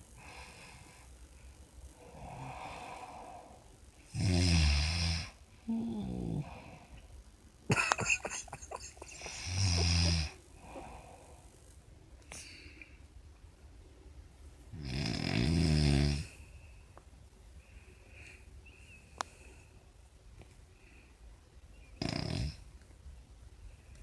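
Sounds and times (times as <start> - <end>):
quiet breaths: 0.0 - 24.0
person snoring: 2.0 - 7.0, 8.0 - 11.6, 14.8 - 16.4, 22.0 - 22.6.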